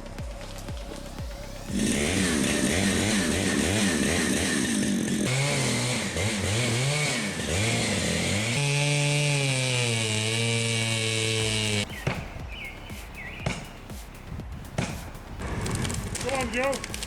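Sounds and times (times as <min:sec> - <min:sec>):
chainsaw engine revving: 0:01.4 - 0:12.4, 0:14.8 - 0:17.0.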